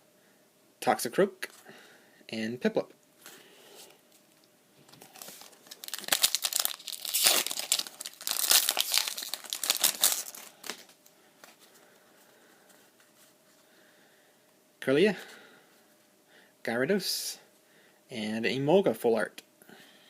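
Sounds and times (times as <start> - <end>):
foil wrapper crinkling: 4.9 - 11.0.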